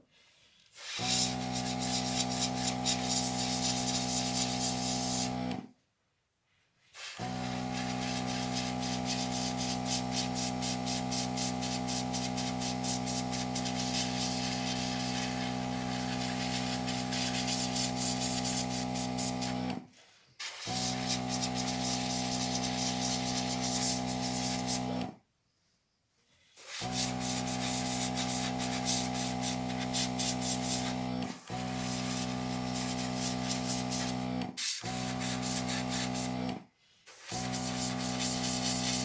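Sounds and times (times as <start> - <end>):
airbrush air hissing: 0.8 - 5.4, 7.0 - 19.6, 20.4 - 24.9, 26.6 - 36.4, 37.1 - 39.0
compressor motor hum: 1.0 - 5.6, 7.2 - 19.8, 20.6 - 25.1, 26.8 - 36.6, 37.3 - 39.0.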